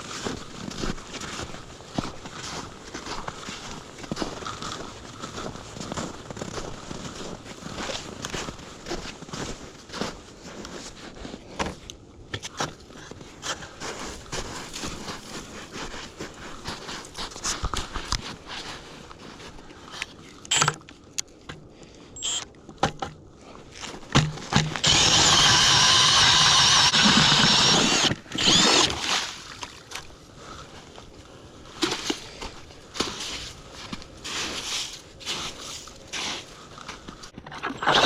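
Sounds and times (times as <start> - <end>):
power ice auger drilling: 20.5 - 20.8, 22.2 - 22.4, 24.6 - 29.1, 37.6 - 38.0.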